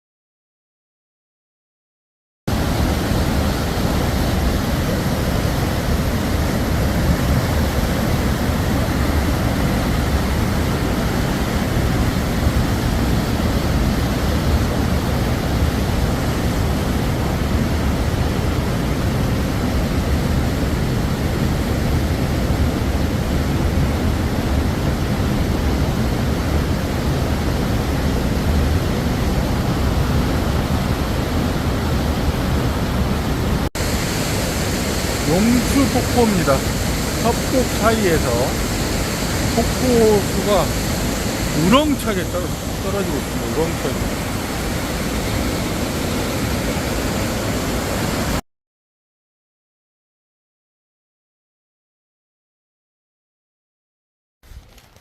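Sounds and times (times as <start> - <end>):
waterfall roaring: 2.5 - 48.4.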